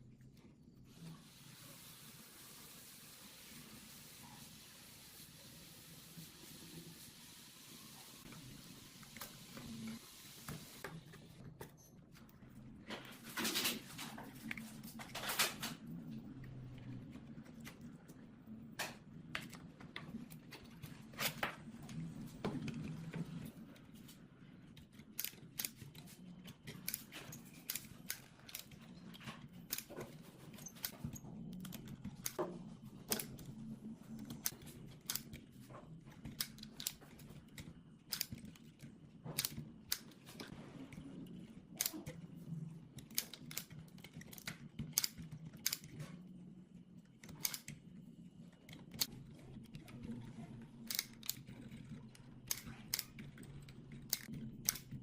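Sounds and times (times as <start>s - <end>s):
hand tools clicking and tapping: 52.5s - 55.0s.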